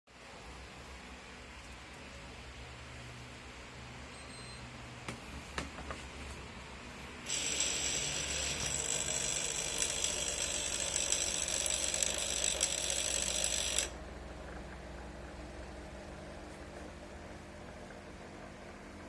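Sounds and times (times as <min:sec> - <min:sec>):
air conditioner rattling: 0:05.0 - 0:11.8.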